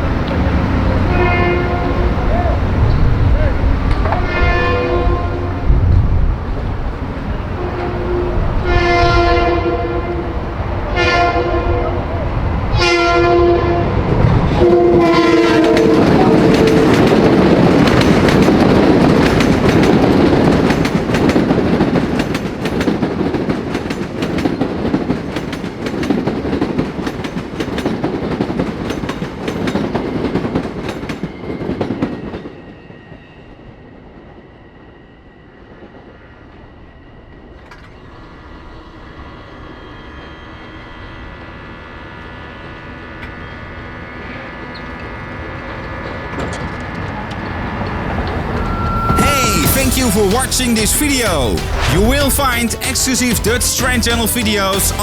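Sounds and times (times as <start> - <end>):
train horn: 0.4 - 6.2, 7.3 - 17.4, 48.2 - 50.5
train wheels clattering over rails: 14.1 - 32.6, 44.8 - 49.2.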